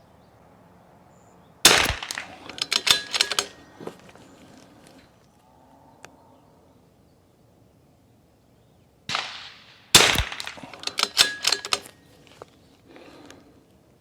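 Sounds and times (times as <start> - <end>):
rifle shot: 1.6 - 3.5, 9.1 - 11.8
rifle bolt metallic clicks: 1.7 - 3.7, 9.1 - 12.0.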